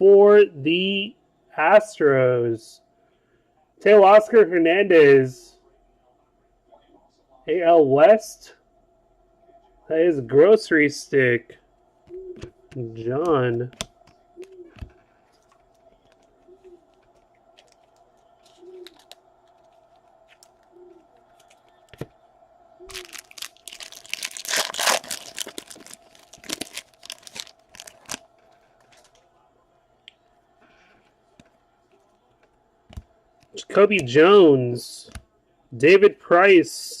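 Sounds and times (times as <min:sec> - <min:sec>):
quiet handling: 0:11.8 - 0:23.2
foil wrapper tearing and crinkling: 0:17.6 - 0:20.6, 0:22.9 - 0:29.2.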